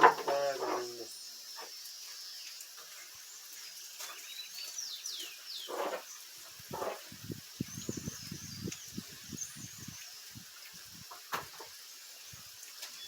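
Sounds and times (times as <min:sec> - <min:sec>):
steady rain falling: 0:00.0 - 0:13.0
bird chirping: 0:03.2 - 0:06.9, 0:07.6 - 0:10.3.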